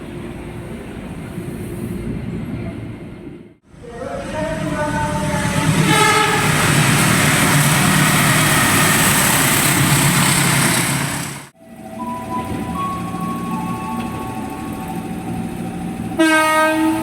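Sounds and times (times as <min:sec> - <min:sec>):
train running close by: 0:00.0 - 0:17.0
electric train horn chord: 0:04.7 - 0:15.0, 0:16.1 - 0:17.0.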